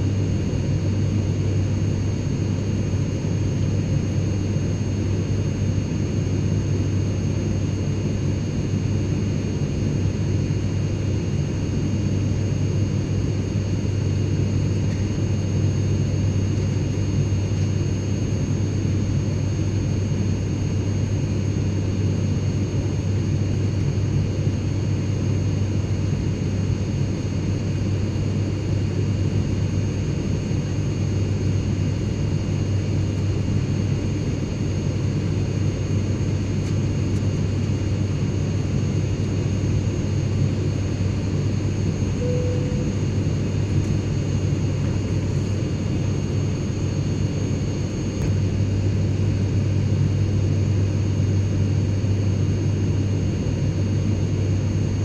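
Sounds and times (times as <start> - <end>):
airliner cabin engine drone: 0.0 - 55.0
faint high whines: 42.0 - 45.6
deep hum: 42.1 - 45.0, 47.2 - 50.7.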